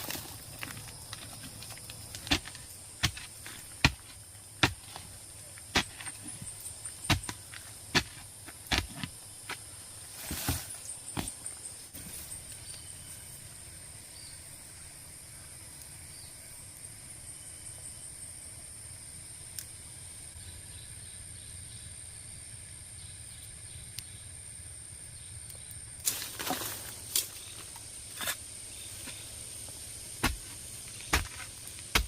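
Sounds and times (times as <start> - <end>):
rustling or scraping: 10.1 - 11.4.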